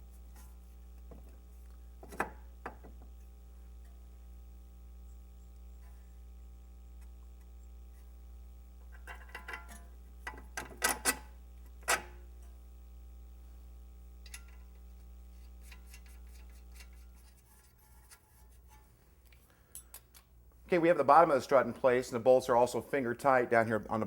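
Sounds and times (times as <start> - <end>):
low electrical hum: 0.0 - 24.0
metal clinks and knocks: 8.9 - 11.2.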